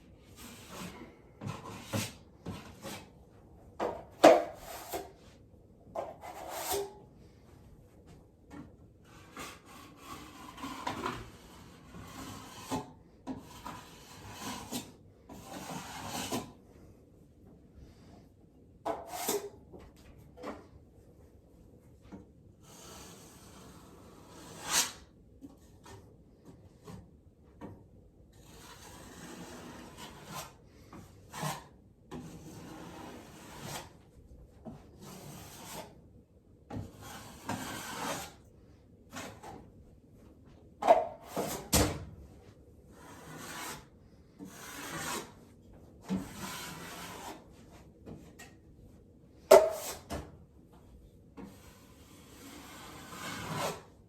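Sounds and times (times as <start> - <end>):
drywall knife scraping compound: 0.0 - 17.0, 18.8 - 20.7, 22.5 - 27.4, 28.3 - 39.9, 40.8 - 50.3, 51.3 - 54.0.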